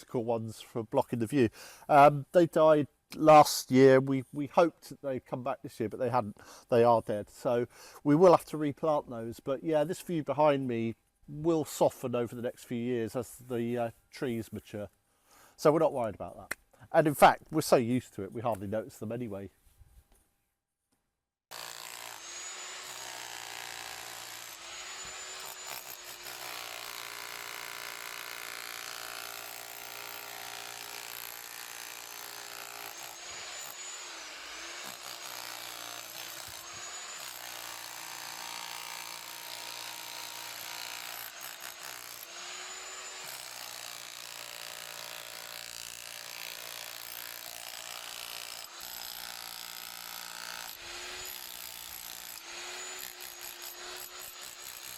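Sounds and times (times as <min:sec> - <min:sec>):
electric power saw cutting: 0:21.5 - 0:54.9.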